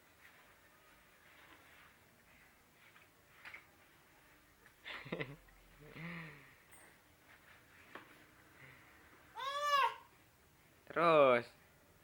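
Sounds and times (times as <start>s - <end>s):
soft hissy rustles: 0.0s - 5.4s, 6.6s - 8.9s.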